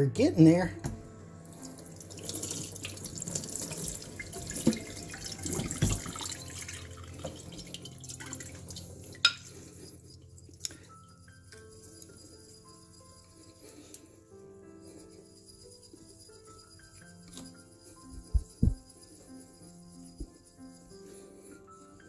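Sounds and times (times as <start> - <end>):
whetstone scraping on diamond plate: 15.1 - 21.2.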